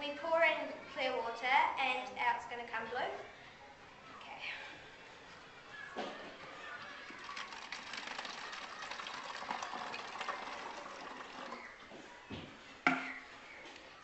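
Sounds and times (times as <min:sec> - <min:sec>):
water trickling and splashing: 0:06.9 - 0:11.8.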